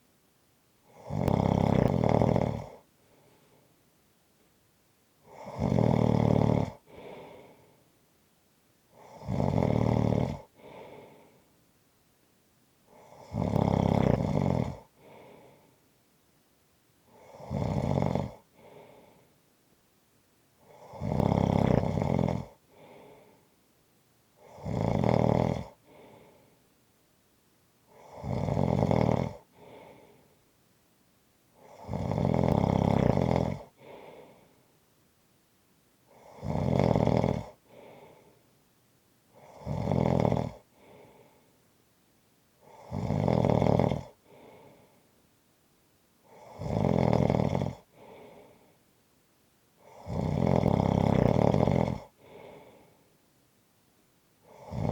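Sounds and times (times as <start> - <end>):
person snoring: 0.9 - 3.3, 5.2 - 7.8, 8.9 - 11.4, 12.9 - 15.7, 17.1 - 19.3, 20.6 - 23.4, 24.4 - 26.5, 27.9 - 30.4, 31.6 - 34.6, 36.1 - 38.4, 39.3 - 41.4, 42.6 - 45.0, 46.2 - 48.7, 49.8 - 53.0, 54.4 - 54.9.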